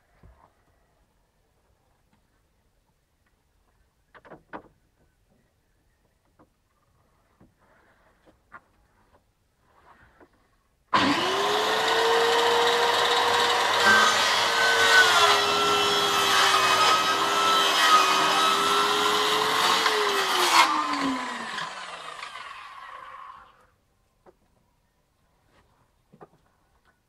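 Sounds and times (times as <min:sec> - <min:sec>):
track saw running and winding down: 0:11.0 - 0:23.7.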